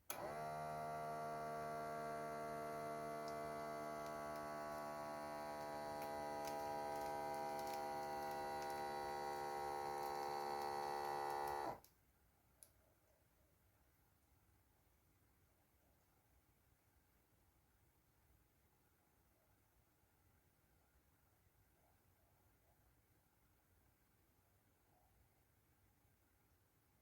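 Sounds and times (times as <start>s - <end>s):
air pump humming: 0.1s - 11.8s.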